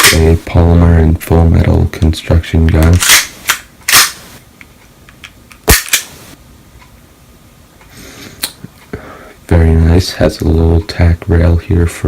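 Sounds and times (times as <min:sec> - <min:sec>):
pistol mechanical clicks: 0:02.8 - 0:04.2.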